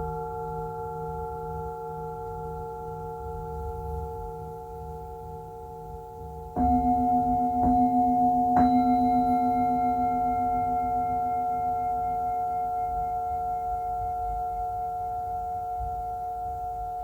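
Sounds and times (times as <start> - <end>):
singing bowl ringing: 6.6 - 17.0.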